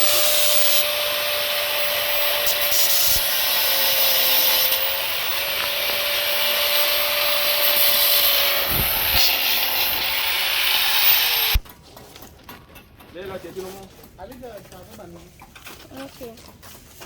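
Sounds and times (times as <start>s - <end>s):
power tool grinding: 0.0s - 11.8s.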